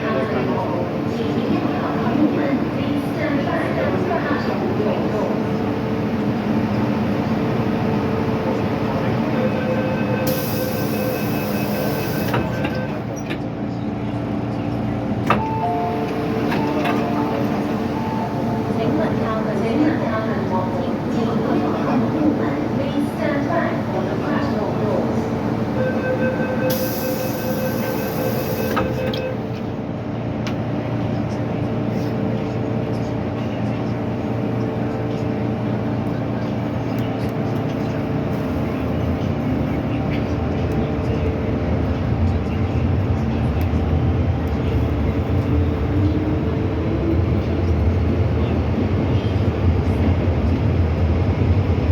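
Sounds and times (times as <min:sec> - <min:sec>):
train rumble and hum: 0:00.0 - 0:51.9
click: 0:36.9 - 0:37.8.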